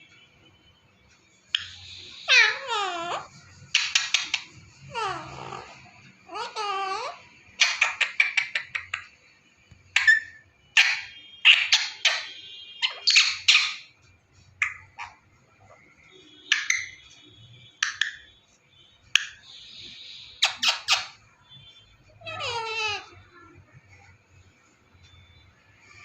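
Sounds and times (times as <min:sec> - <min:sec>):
parrot squawking and screeching: 0:01.5 - 0:09.1, 0:09.9 - 0:14.0, 0:14.6 - 0:17.2, 0:17.8 - 0:18.3, 0:19.1 - 0:21.3, 0:22.1 - 0:23.3.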